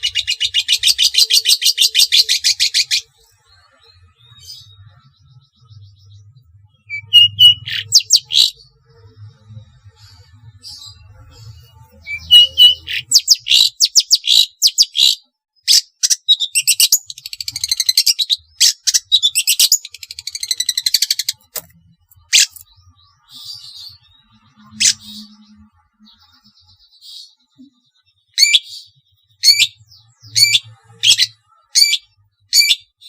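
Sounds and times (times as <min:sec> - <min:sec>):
bird singing harsh trills: 0:00.0 - 0:33.0.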